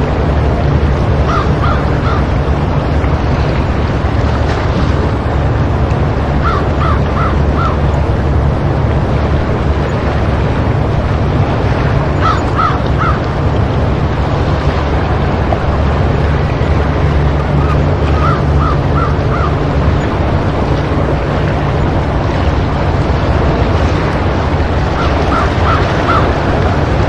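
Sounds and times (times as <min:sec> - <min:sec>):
bird calling: 0:01.1 - 0:02.8, 0:06.3 - 0:08.0, 0:11.8 - 0:13.4, 0:17.2 - 0:20.6, 0:23.7 - 0:27.0
waves breaking against rocks: 0:18.6 - 0:27.0.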